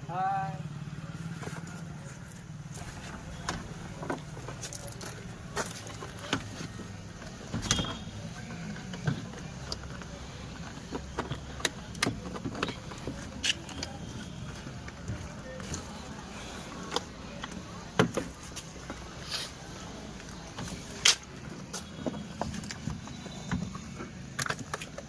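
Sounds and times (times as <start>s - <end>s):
sharp clicks and knocks: 8.7s - 14.1s.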